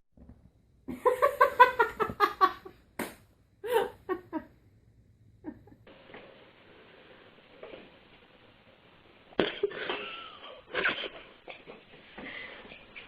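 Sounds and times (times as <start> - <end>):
person laughing hard: 3.6 - 4.5, 9.4 - 11.4.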